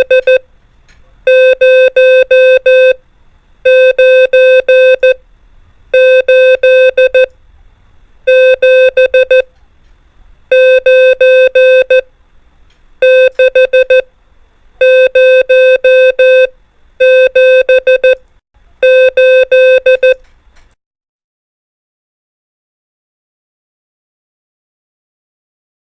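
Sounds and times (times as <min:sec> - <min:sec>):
morse code tone: 0:00.0 - 0:00.4, 0:01.3 - 0:03.0, 0:03.7 - 0:05.2, 0:06.0 - 0:07.3, 0:08.3 - 0:09.5, 0:10.5 - 0:12.1, 0:13.0 - 0:14.1, 0:14.8 - 0:18.2, 0:18.8 - 0:20.2.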